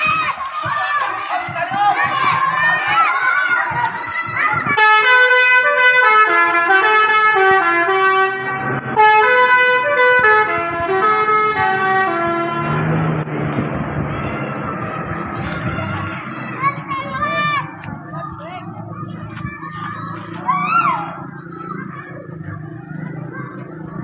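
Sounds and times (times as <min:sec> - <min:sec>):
musical bus air horn playing a tune: 0:04.8 - 0:13.2.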